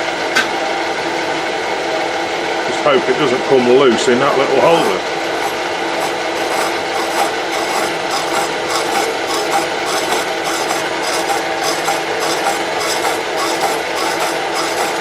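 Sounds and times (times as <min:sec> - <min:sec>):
saw cutting metal: 0:04.6 - 0:15.0.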